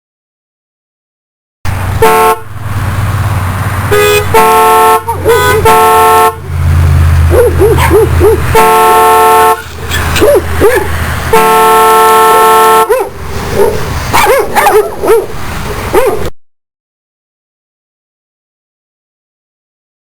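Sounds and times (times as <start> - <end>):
car horn blasts: 2.0 - 2.5, 3.9 - 6.5, 8.5 - 9.7, 11.3 - 13.0
dog barking: 7.3 - 8.6, 9.9 - 10.9, 12.8 - 16.3.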